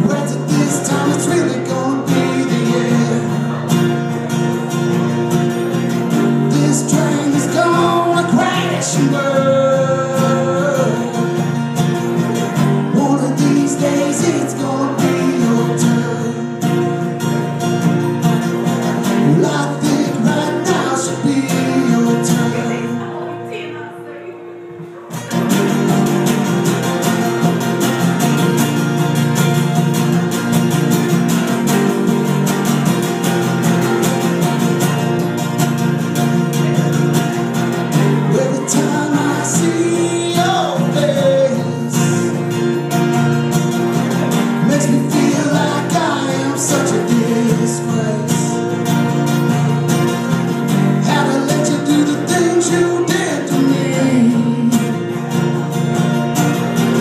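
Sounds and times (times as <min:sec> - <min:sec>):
person singing: 0:00.0 - 0:04.6, 0:06.1 - 0:11.6, 0:12.3 - 0:17.0, 0:19.1 - 0:25.5, 0:37.9 - 0:42.6, 0:44.2 - 0:48.8, 0:51.0 - 0:55.3
live band with guitar: 0:00.0 - 0:57.0.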